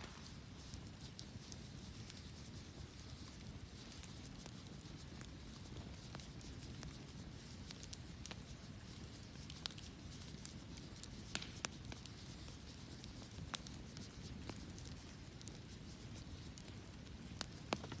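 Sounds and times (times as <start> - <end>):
wood fire crackling and popping: 0.0 - 18.0.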